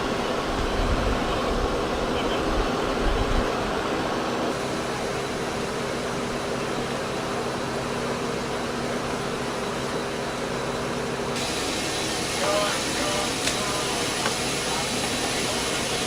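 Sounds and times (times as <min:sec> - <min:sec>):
turboprop engines droning: 0:00.0 - 0:16.0.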